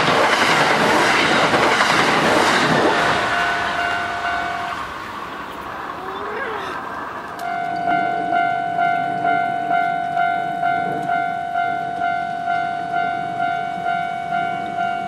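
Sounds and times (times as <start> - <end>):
railroad crossing bell ringing: 2.7 - 5.4, 7.4 - 15.0.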